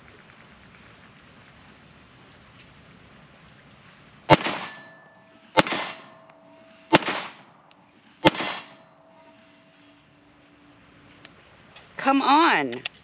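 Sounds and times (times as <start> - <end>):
pistol shots: 4.3 - 4.9, 5.5 - 6.2, 6.9 - 7.5, 8.2 - 8.8.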